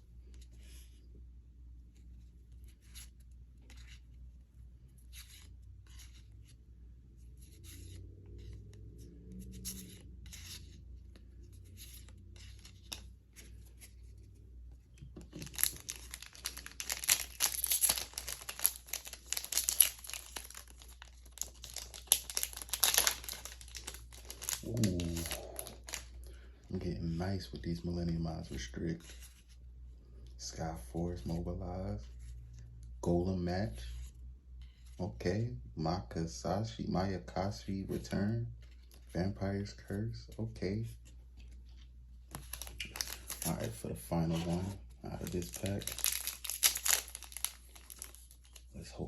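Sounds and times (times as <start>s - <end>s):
foil wrapper tearing and crinkling: 15.4s - 26.1s, 42.4s - 43.7s, 44.4s - 48.6s.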